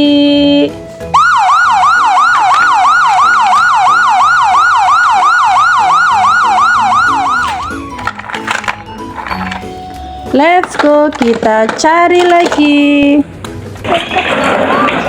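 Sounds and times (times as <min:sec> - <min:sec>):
toy electronic siren yelping: 0:01.1 - 0:08.0, 0:14.6 - 0:15.0.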